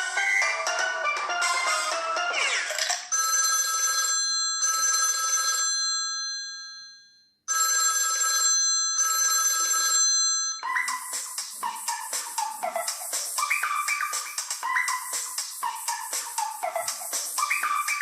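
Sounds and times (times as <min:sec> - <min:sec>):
rhythmic ringtone: 0:00.0 - 0:06.1, 0:07.5 - 0:18.0
other ringtone: 0:00.1 - 0:11.2
bell-like phone ringtone: 0:00.2 - 0:11.2.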